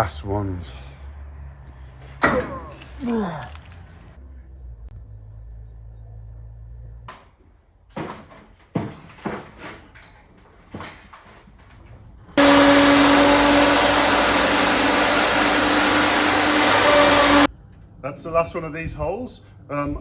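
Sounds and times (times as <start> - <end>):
magnetic drill drilling steel: 12.4 - 17.5.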